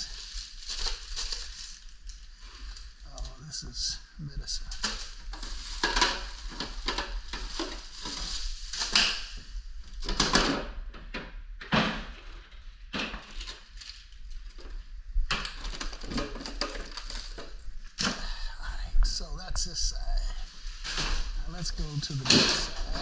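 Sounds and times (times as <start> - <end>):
rustling: 0.0 - 3.5, 4.6 - 10.7, 12.2 - 18.2, 19.4 - 23.0
containers clattering in refrigerator: 5.7 - 9.2, 22.2 - 23.0.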